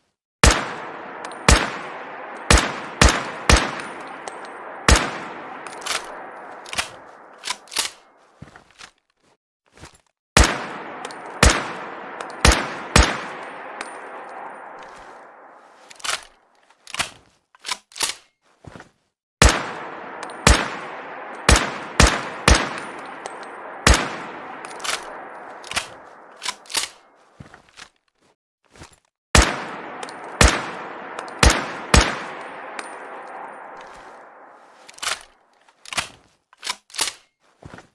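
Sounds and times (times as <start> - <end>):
rifle shots echoing: 0.4 - 8.2, 10.4 - 16.3, 19.4 - 27.2, 29.4 - 35.4
metallic clicks and clanks: 34.8 - 37.4.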